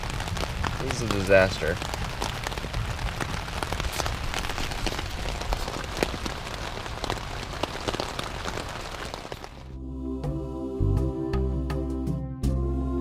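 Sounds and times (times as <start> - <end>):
raindrops tapping: 0.0 - 9.7
light rain falling: 0.0 - 9.8.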